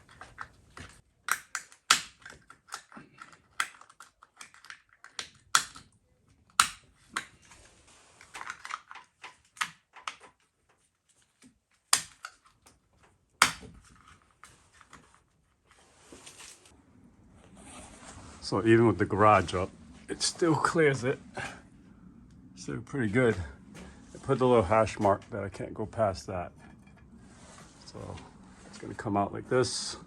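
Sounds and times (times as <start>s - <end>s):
small parts clicking and tapping: 0.0s - 7.5s, 8.3s - 10.8s.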